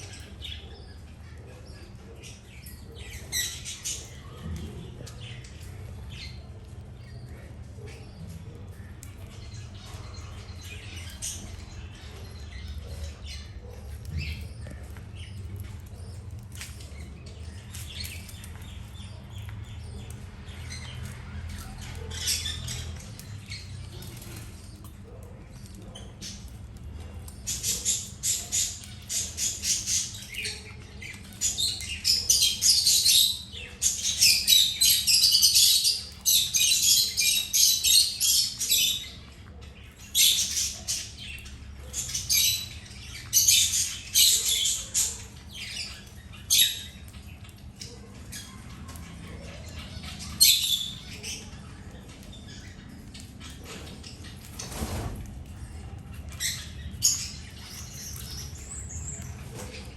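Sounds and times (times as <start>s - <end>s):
small birds chirping and squawking: 0.0s - 59.9s.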